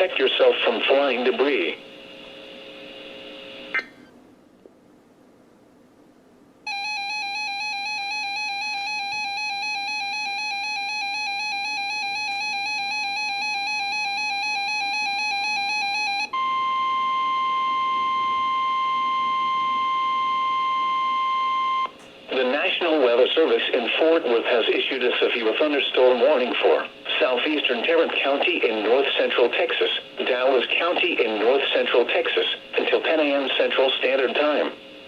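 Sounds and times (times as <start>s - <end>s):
radio hiss: 0.0s - 3.8s, 22.3s - 35.0s
steady alarm tone: 6.7s - 21.9s.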